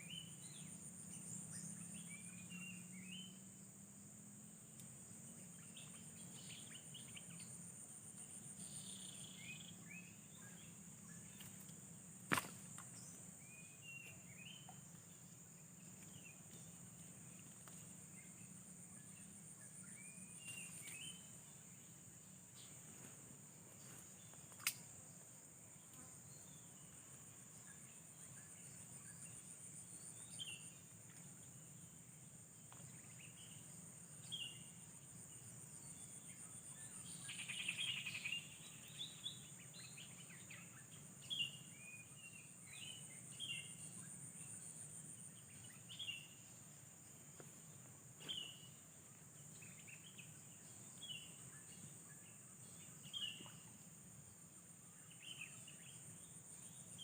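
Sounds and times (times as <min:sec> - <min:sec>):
high insect trill: 0:00.0 - 0:57.0
bird chirps: 0:35.8 - 0:44.7.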